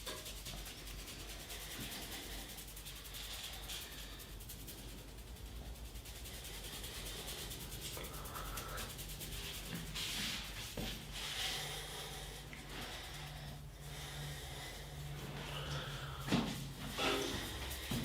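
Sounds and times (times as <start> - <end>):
hands rubbing skin and hair: 0.0 - 13.4.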